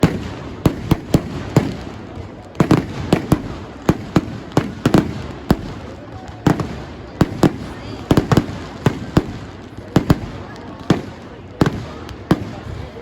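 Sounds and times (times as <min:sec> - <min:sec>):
fireworks bangs with echo: 0:00.0 - 0:13.0.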